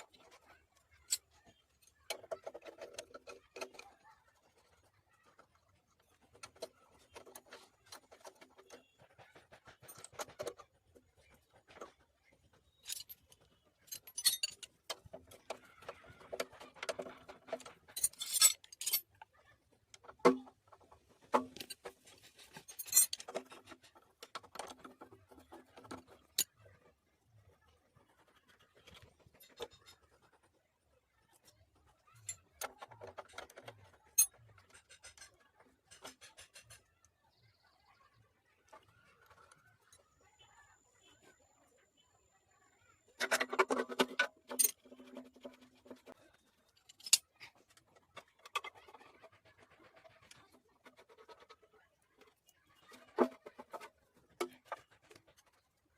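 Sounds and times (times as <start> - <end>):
metal tools clinking and scraping: 12.6 - 19.2, 21.3 - 26.6, 43.2 - 47.8.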